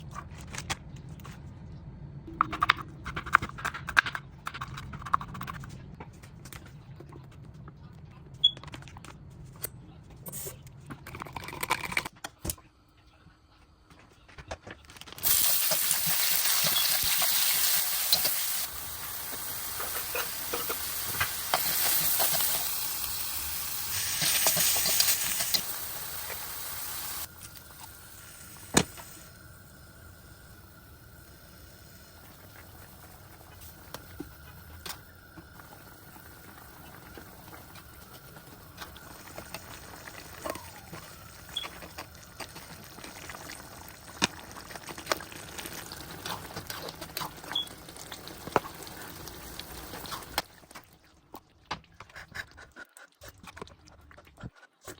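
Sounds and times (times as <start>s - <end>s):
food sizzling in a pan: 15.2s - 50.4s.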